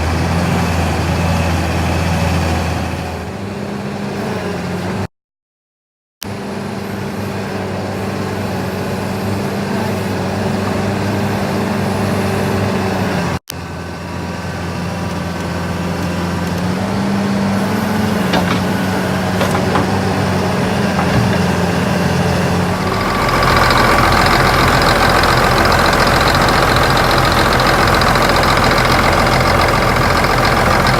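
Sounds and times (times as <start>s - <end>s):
excavator diesel engine idling: 13.6s - 30.9s.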